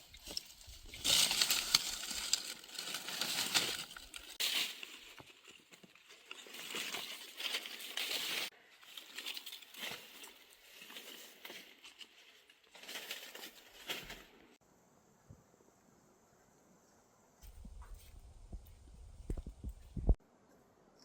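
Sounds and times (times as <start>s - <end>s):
dry crackling rustle: 0.0s - 14.6s.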